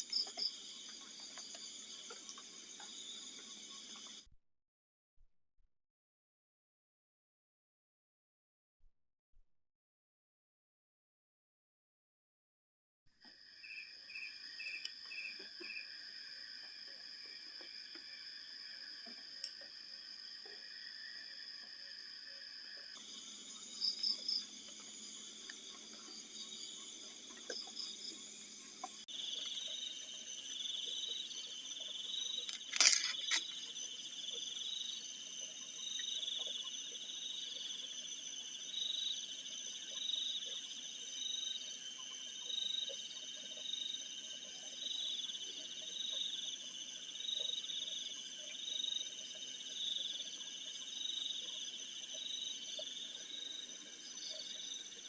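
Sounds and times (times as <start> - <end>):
insects chirping in trills: 0.0 - 4.3, 13.2 - 55.0
sharp click: 32.4 - 33.6.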